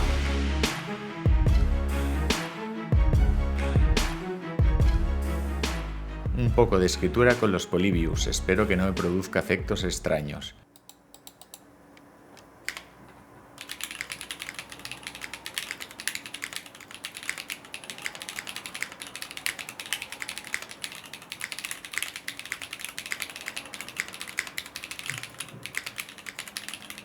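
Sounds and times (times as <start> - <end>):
mechanical keyboard typing: 12.6 - 12.9, 13.6 - 27.0.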